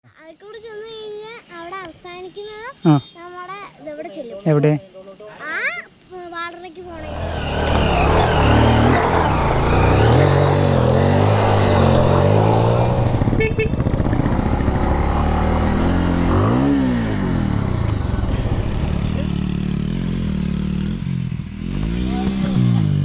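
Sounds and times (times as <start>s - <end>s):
motorcycle engine revving: 6.9s - 23.0s.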